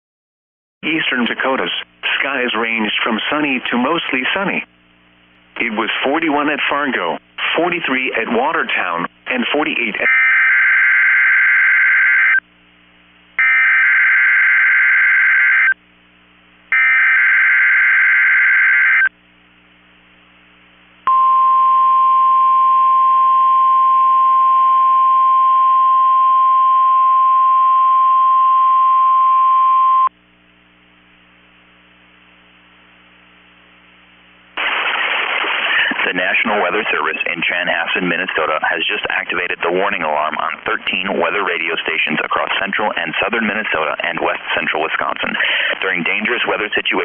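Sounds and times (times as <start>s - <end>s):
steady warning alarm tone: 13.4s - 15.8s, 16.7s - 19.1s.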